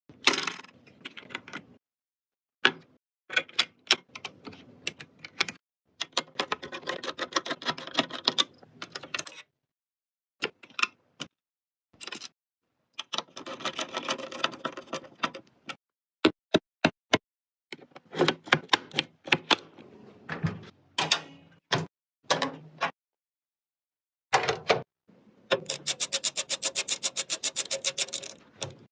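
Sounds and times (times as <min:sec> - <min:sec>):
computer hardware clicks and rattling: 0:13.0 - 0:15.5, 0:25.5 - 0:28.9.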